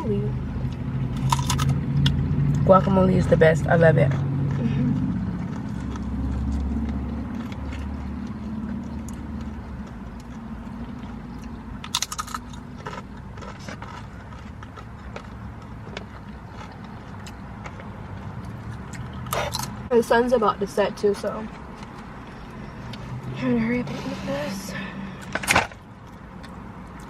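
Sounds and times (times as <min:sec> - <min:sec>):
tortilla chip crunching: 0:00.6 - 0:02.2, 0:04.1 - 0:19.8.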